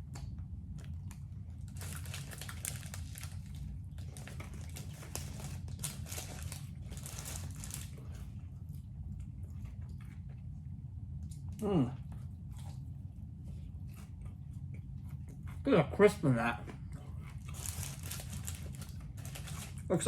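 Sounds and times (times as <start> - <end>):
steady low hum: 0.0 - 20.0
sandwich wrapper crinkling: 0.8 - 8.4, 16.7 - 20.0.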